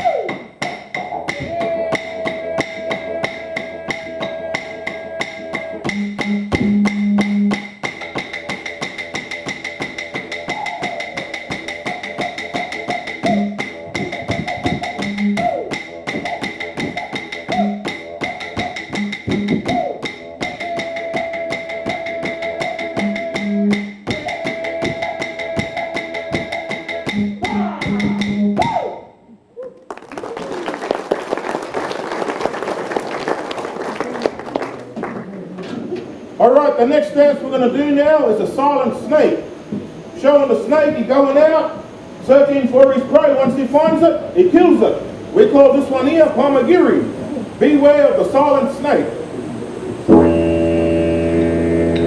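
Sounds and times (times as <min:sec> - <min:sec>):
clapsticks beating a rhythm: 0:00.0 - 0:23.5
didgeridoo drone: 0:00.0 - 0:29.4, 0:44.2 - 0:52.0
applause: 0:29.8 - 0:35.4.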